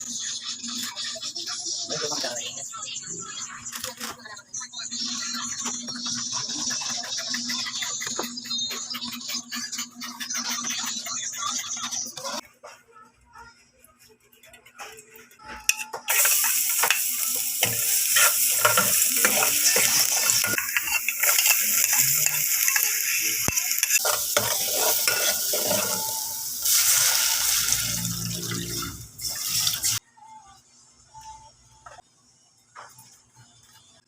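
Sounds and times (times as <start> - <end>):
food sizzling in hot oil: 16.1 - 30.0.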